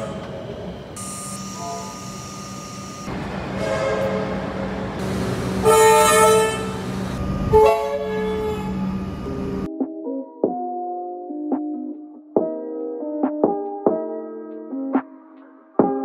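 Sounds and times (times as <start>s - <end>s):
train horn chord: 0.0s - 9.2s
train running hum: 0.0s - 9.7s.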